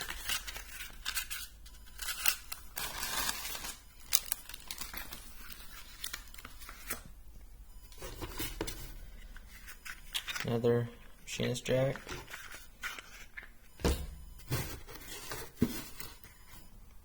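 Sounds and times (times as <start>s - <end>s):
paper crinkling and tearing: 0.0s - 7.0s.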